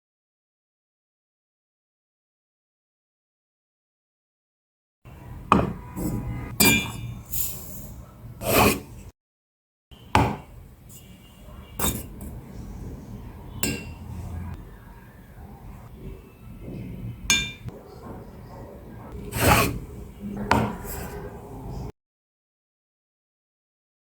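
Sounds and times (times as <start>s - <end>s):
utensils and dishes clinking: 5.6s - 8.0s, 11.8s - 12.6s, 13.6s - 14.5s, 15.9s - 21.9s.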